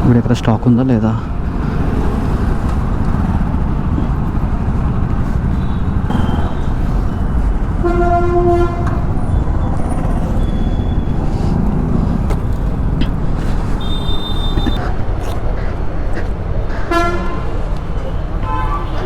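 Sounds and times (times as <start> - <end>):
traffic road and wind noise: 0.0 - 19.0
vehicle horn honking: 7.8 - 9.2, 13.7 - 14.8, 16.9 - 17.5, 18.4 - 19.0.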